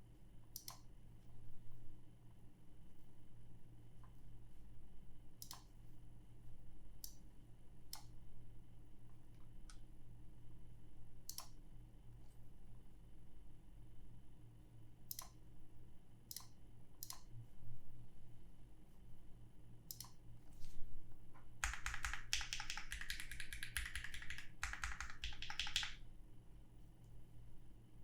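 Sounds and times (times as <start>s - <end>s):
mechanical keyboard typing: 21.6s - 26.0s.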